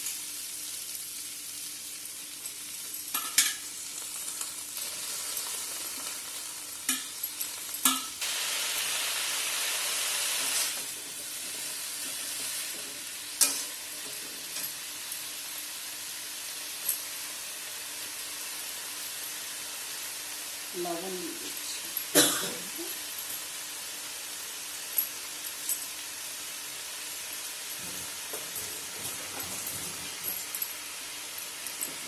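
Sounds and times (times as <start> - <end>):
vegetables sizzling in a pan: 0.0 - 32.0.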